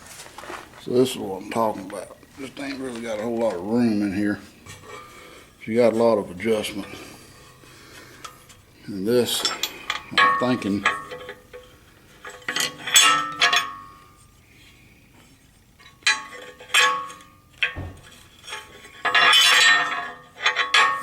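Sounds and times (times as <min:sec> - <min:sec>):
steel parts clanking together: 0:09.2 - 0:13.9, 0:15.8 - 0:21.0.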